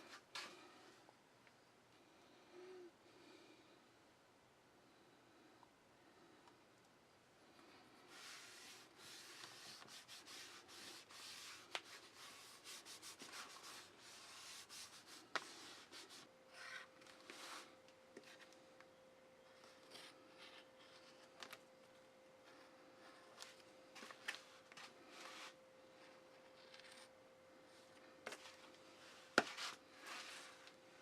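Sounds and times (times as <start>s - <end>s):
faint steady tone: 0.0s - 31.0s
rubbing strokes on leather: 8.1s - 16.3s.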